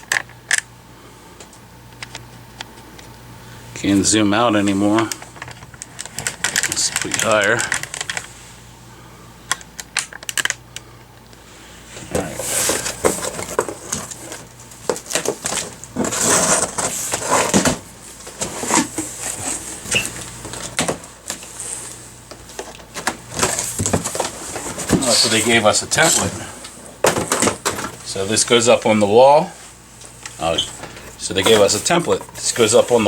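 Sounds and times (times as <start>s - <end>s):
steady low hum: 0.0s - 33.0s
packaging rustling and clicking: 5.0s - 8.4s, 9.5s - 10.6s, 12.1s - 28.1s, 30.0s - 33.0s.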